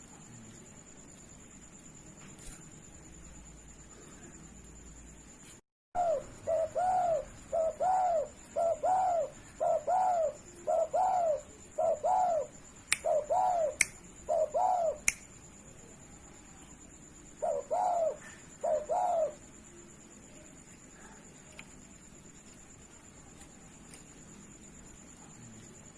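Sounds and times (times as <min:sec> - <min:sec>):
faint high whine: 0:00.0 - 0:25.9
dove cooing: 0:06.0 - 0:15.0, 0:17.4 - 0:19.4.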